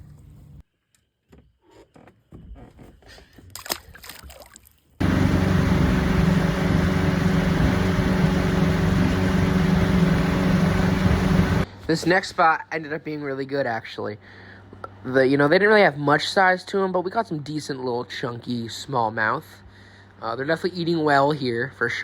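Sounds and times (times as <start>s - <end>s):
motorboat engine droning: 5.0s - 11.7s.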